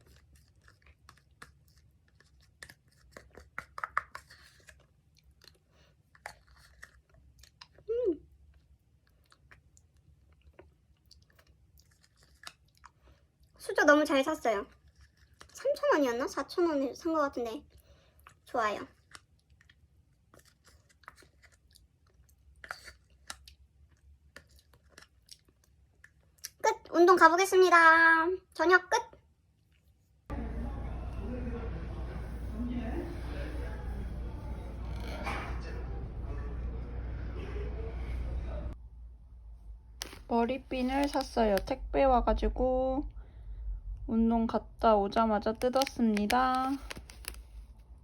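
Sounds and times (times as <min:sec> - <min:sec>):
chewing and crunching: 0:00.0 - 0:16.6, 0:17.5 - 0:26.9.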